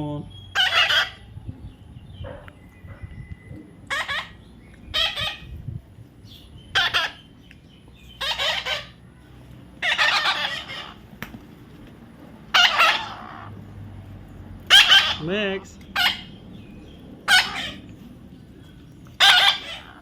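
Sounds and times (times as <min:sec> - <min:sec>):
parrot harsh calls: 0:00.4 - 0:01.3, 0:03.9 - 0:05.5, 0:06.7 - 0:07.3, 0:08.1 - 0:09.0, 0:09.8 - 0:11.1, 0:12.5 - 0:13.6, 0:14.7 - 0:15.3, 0:15.9 - 0:16.4, 0:17.2 - 0:17.9, 0:19.2 - 0:20.0.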